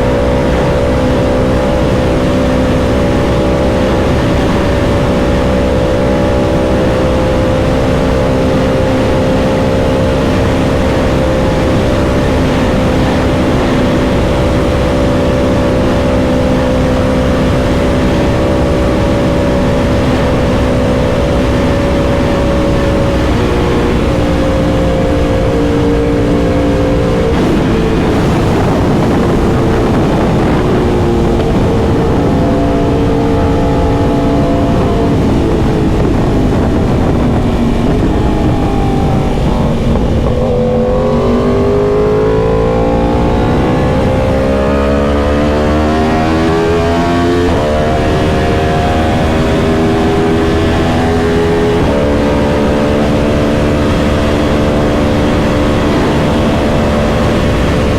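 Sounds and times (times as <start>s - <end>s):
motorcycle engine cruising: 0.0s - 57.9s
wind and road noise: 0.0s - 57.9s.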